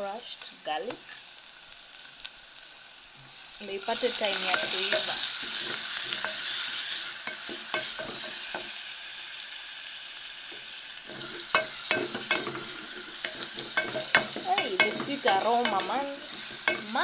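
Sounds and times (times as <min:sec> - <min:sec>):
onions sizzling in oil: 0:00.0 - 0:17.0
spoon knocking against pot: 0:11.4 - 0:17.0.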